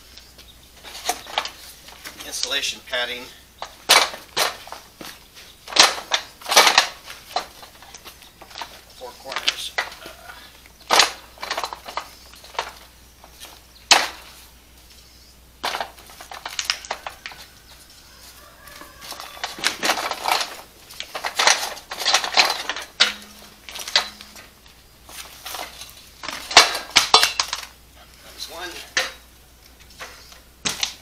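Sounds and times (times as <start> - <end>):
metal frame clinking: 5.7 - 10.0, 19.1 - 27.7, 28.5 - 29.3
chickens clucking: 9.0 - 10.8, 16.7 - 20.3.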